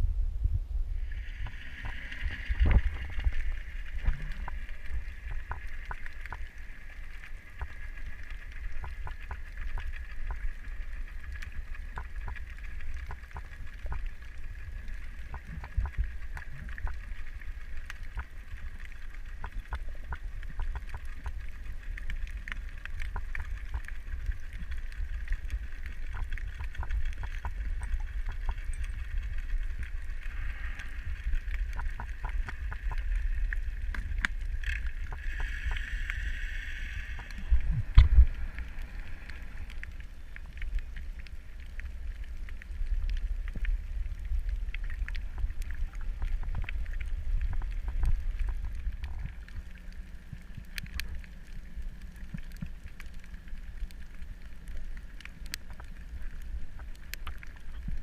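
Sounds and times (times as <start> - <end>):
low rumble: 0.0 - 58.0
underwater hum: 0.0 - 58.0
small sharp clicks crackling: 37.1 - 58.0.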